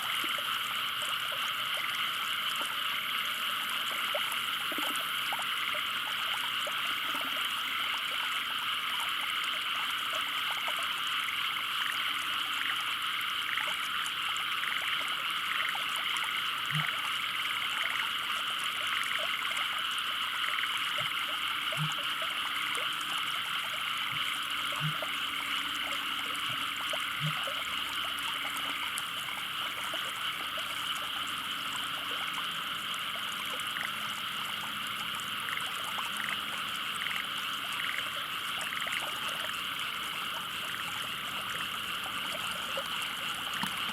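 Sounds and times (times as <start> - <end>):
frogs chorus trilling: 0.0 - 43.9
low frog croaks: 14.6 - 18.2, 18.8 - 43.9.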